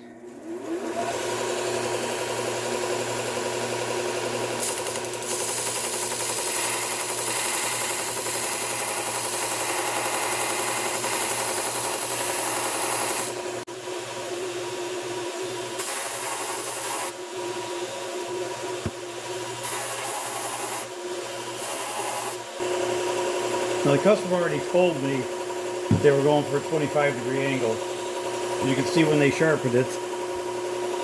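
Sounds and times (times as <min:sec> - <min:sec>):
belt sander grinding hiss: 0:23.7 - 0:30.1.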